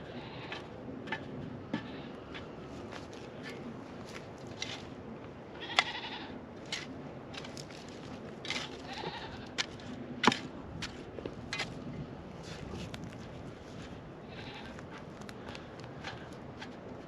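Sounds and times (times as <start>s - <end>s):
goats bleating: 5.6s - 6.4s, 8.6s - 9.6s, 14.3s - 14.8s.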